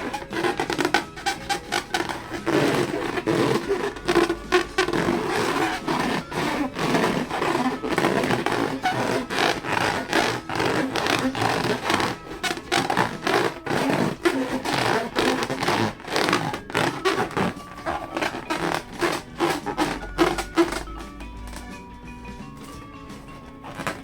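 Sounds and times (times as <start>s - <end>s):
rubber balloons squeaking: 0.0s - 22.0s, 22.8s - 24.0s.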